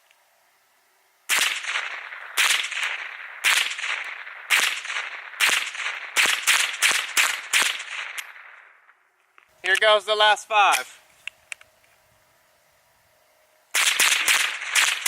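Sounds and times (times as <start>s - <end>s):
rifle shots with echo: 1.3s - 9.0s, 13.7s - 15.0s.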